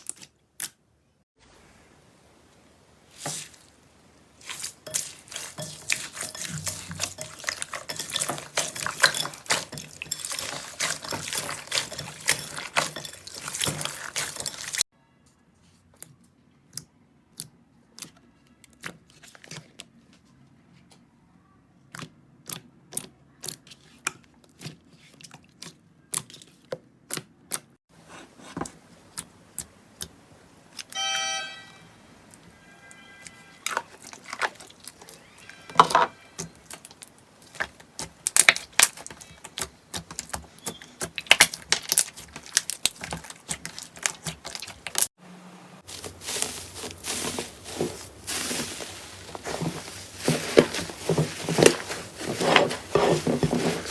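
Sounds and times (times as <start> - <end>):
slime crackling and popping: 36.6 - 45.1.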